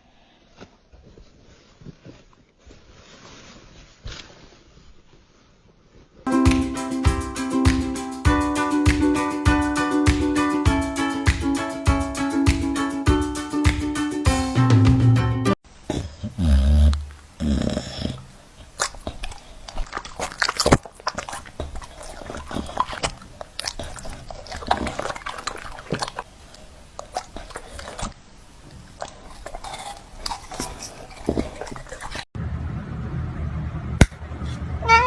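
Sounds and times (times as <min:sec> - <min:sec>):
dog biting and chewing: 0:15.9 - 0:32.3.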